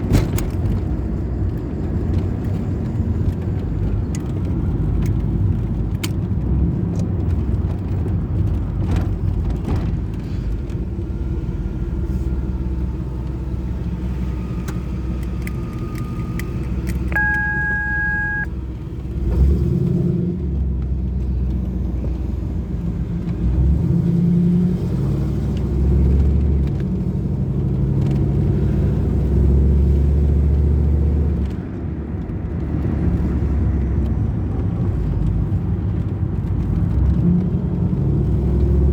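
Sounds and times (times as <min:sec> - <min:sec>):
electronic beep: 0:17.1 - 0:18.5.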